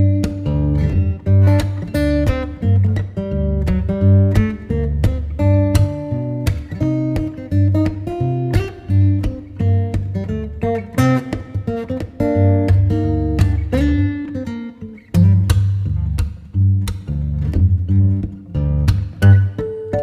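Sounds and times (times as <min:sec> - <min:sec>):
bass line: 0:00.0 - 0:14.3
acoustic guitar: 0:00.0 - 0:20.0.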